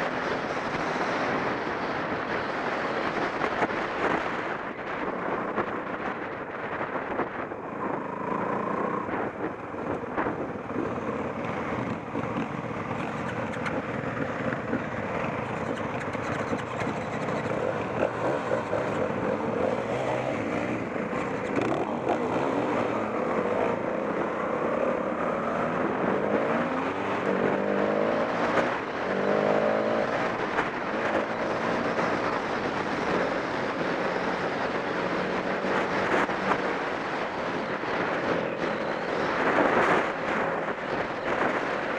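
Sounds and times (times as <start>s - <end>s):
off-road motorcycle engine revving: 11.6s - 32.3s.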